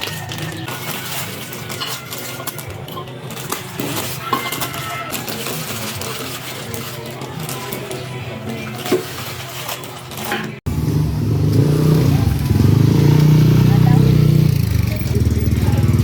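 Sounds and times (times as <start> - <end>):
metal tools clinking: 0.0 - 10.6.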